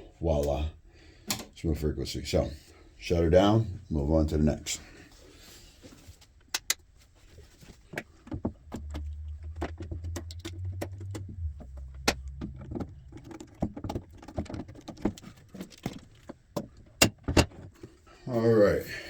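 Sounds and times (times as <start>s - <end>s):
cables and plugs rattling: 7.3s - 18.0s
low hum: 8.3s - 14.9s.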